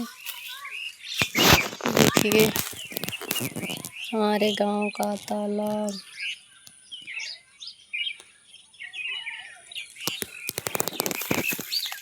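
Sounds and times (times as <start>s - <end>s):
crackling clicks and rustles: 0.0s - 7.4s, 9.7s - 12.0s
small birds chirping: 0.0s - 12.0s.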